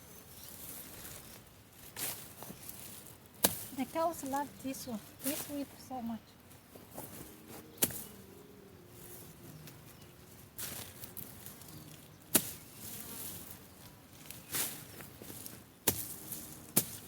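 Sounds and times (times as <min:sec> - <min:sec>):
blade swishing through grass: 0:00.5 - 0:05.7, 0:07.1 - 0:08.2, 0:10.6 - 0:17.0.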